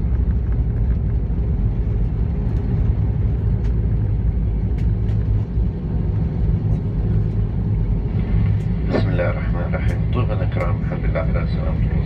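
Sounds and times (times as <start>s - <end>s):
aircraft cabin low rumble: 0.0s - 12.0s.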